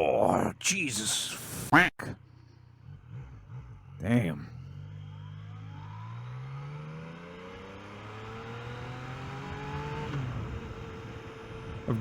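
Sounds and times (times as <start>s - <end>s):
motorcycle engine accelerating: 2.2s - 12.0s.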